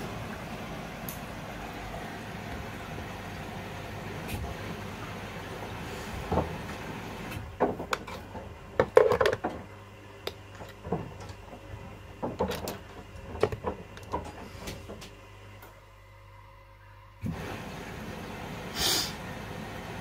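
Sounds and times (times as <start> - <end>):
washing machines humming: 0.0 - 20.0
clicks and knocks: 7.4 - 9.7, 10.3 - 15.1.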